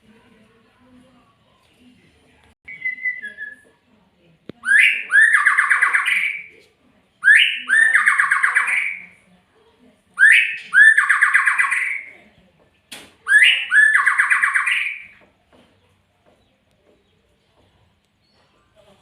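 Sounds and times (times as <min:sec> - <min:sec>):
bird harsh rattling calls: 0:04.7 - 0:06.5, 0:07.2 - 0:09.0, 0:10.2 - 0:12.1, 0:13.3 - 0:15.2.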